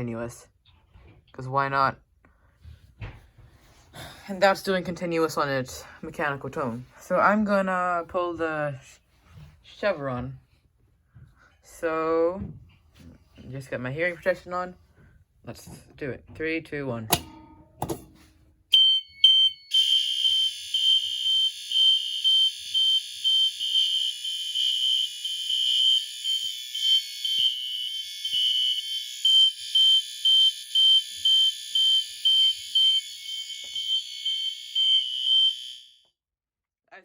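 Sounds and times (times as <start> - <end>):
fire alarm horn pulsing: 18.7 - 36.0
short alarm tones: 18.7 - 36.0
steady continuous alarm tone: 18.7 - 36.0.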